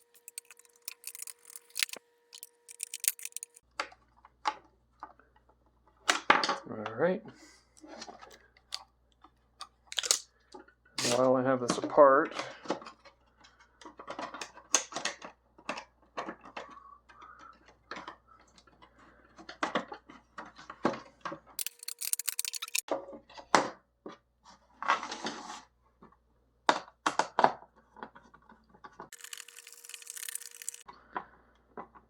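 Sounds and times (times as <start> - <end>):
plastic parts clicking and tapping: 0.0 - 4.7, 13.8 - 22.9, 26.7 - 32.0.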